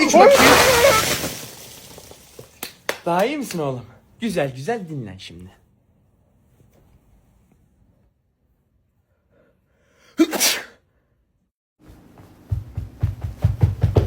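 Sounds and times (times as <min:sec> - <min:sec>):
loud sneeze: 0:00.0 - 0:01.4, 0:10.2 - 0:10.8.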